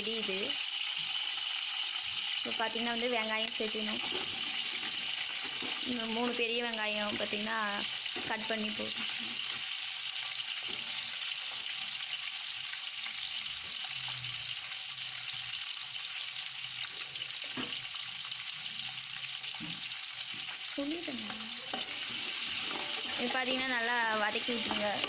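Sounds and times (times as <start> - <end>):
onions sizzling in hot oil: 0.0 - 25.0.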